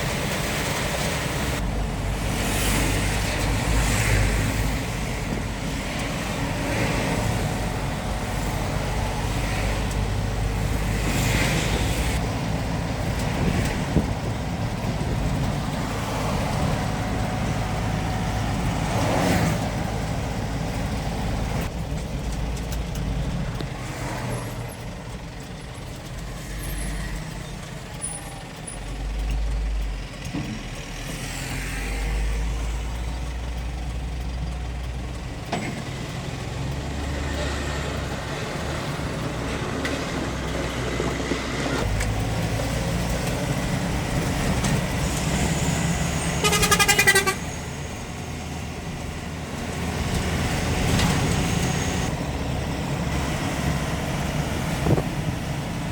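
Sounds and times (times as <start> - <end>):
truck engine droning: 0.0 - 55.9
horn blast: 46.3 - 47.6.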